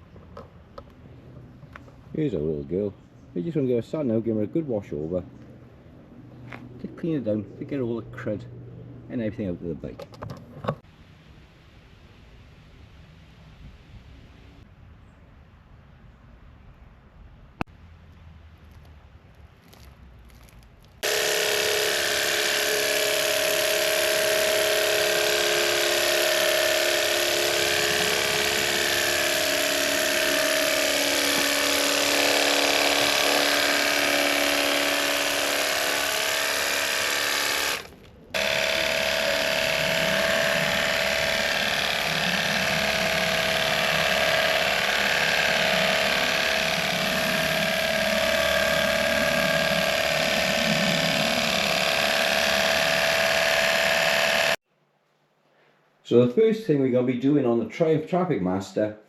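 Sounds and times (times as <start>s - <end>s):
pressure washer motor drone: 21.0s - 54.6s.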